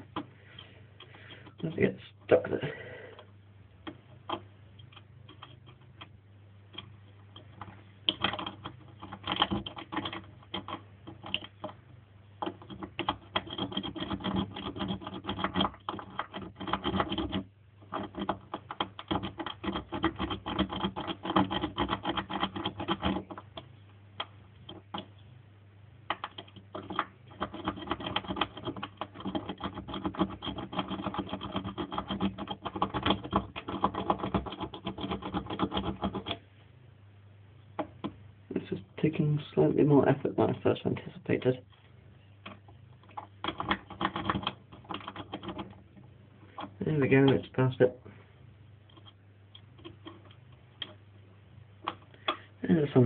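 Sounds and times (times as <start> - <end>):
lock pick clicking and scraping: 3.8 - 6.2, 6.8 - 11.8, 12.4 - 25.2, 26.1 - 36.4, 42.4 - 47.4, 48.9 - 51.0.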